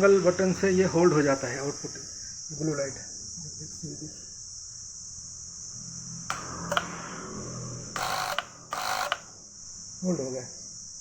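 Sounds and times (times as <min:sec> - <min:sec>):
high-pitched whine: 0:05.7 - 0:09.9
sharp relay clicks: 0:06.3 - 0:07.0, 0:08.0 - 0:09.3
relays buzzing clatter: 0:06.3 - 0:07.2, 0:08.0 - 0:09.4.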